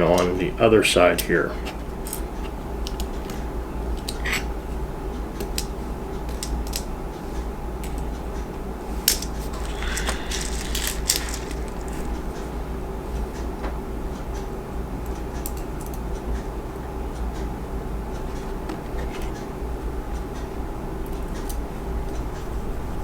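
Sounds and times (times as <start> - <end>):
steady low hum: 0.0 - 23.0
plastic and metal parts clicking: 9.1 - 12.2.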